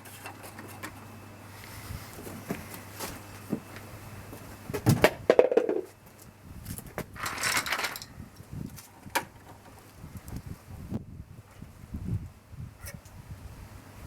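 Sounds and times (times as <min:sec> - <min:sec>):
parts and tools clattering: 0:07.2 - 0:08.1.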